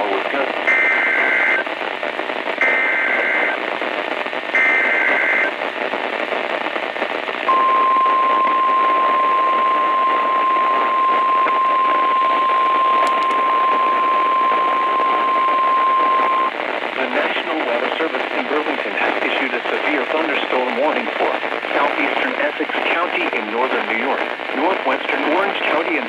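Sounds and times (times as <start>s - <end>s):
radio hiss: 0.0s - 26.0s
steady warning alarm tone: 0.7s - 1.6s, 2.6s - 3.6s, 4.6s - 5.5s, 7.5s - 16.5s.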